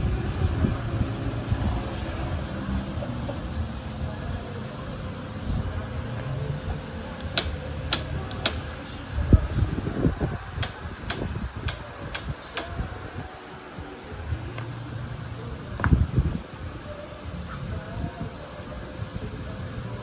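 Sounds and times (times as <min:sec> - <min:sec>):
sharp clicks: 0:07.2 - 0:08.9, 0:10.5 - 0:12.9.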